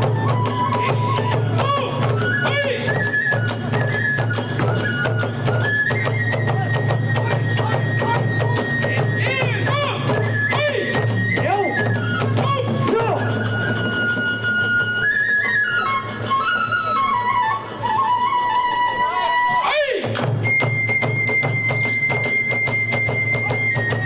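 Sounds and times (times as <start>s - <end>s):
transverse flute melody: 0.0s - 24.0s
fast drum beat: 6.4s - 11.8s.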